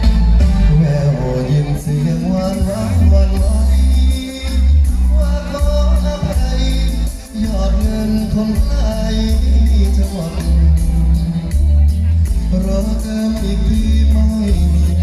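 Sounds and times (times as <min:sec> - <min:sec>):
live band through loudspeakers: 0:00.0 - 0:15.0
person singing: 0:00.0 - 0:15.0.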